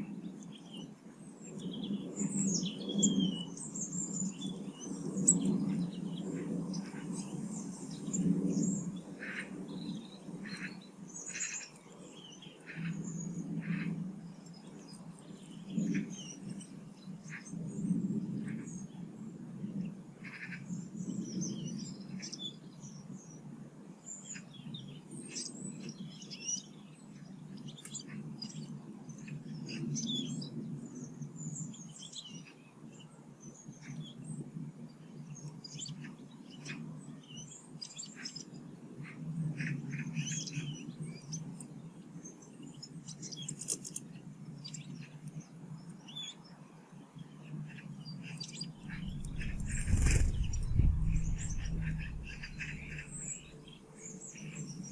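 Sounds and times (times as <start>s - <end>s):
birds chirping: 47.6s - 54.9s
low background rumble: 48.8s - 54.5s.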